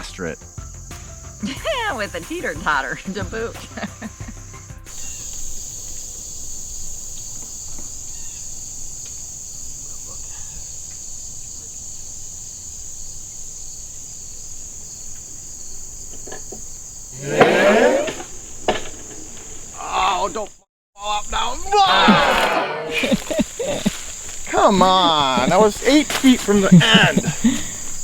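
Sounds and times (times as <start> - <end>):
insects chorus drone: 0.0 - 28.0
person shouting: 21.4 - 23.2.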